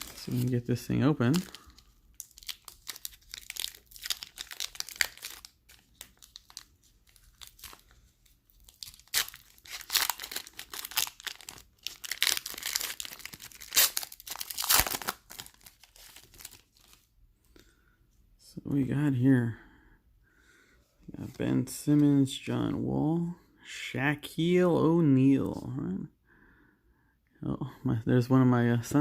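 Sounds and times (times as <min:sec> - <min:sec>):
plastic wrapper crinkling: 0:00.0 - 0:17.1.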